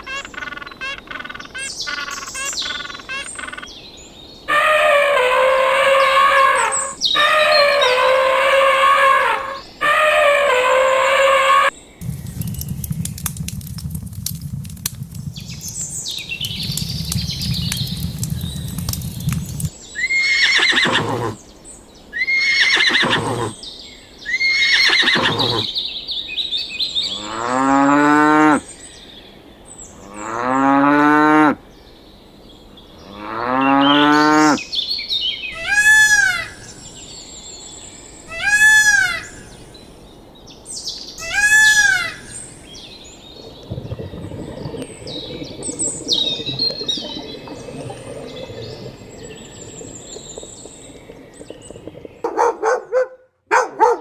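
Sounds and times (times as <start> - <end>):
low rumble with clicks: 12.0 - 19.7.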